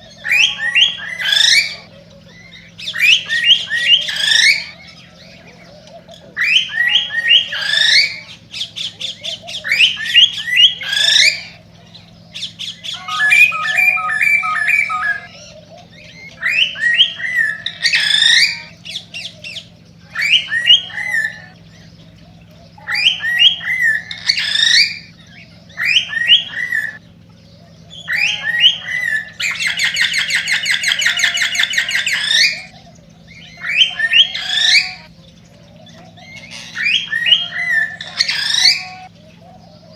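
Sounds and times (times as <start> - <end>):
buzzy bird trill: 12.6 - 15.5, 28.0 - 35.2, 35.9 - 39.1
cockatiel chirping and whistling: 12.9 - 15.3, 36.5 - 39.1.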